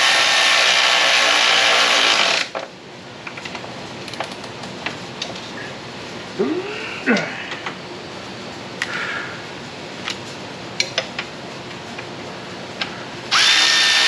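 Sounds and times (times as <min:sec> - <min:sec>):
power drill whining: 0:00.0 - 0:02.5, 0:13.3 - 0:14.0.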